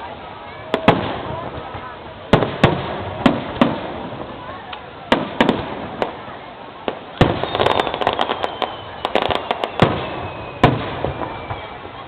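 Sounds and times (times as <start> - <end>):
fireworks booming: 0.0 - 12.0
fireworks crackling: 0.0 - 12.0.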